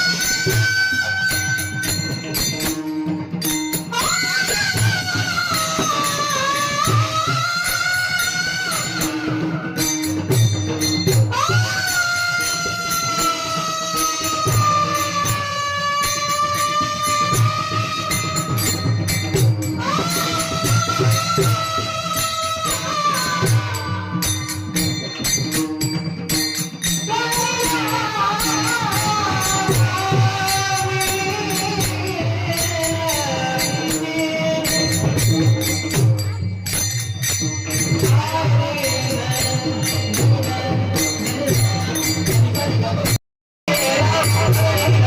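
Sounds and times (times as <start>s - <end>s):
jingling hand percussion: 0.0s - 45.0s
man singing long wavering notes: 3.9s - 10.4s, 11.2s - 25.2s, 37.6s - 45.0s.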